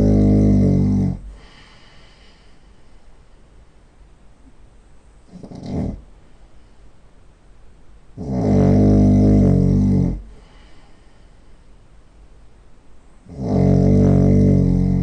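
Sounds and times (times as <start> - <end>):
man snoring loudly: 0.0 - 1.3, 8.2 - 10.2, 13.3 - 15.0.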